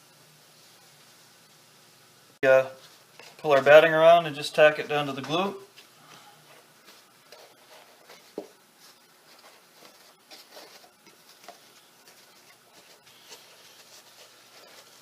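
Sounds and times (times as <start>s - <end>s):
batting rustling and patting: 4.9s - 15.0s.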